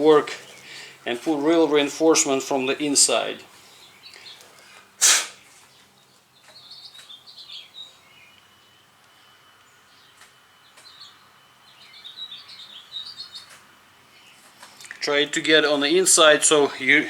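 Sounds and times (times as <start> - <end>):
high warbling bird chirps: 9.7 - 13.5.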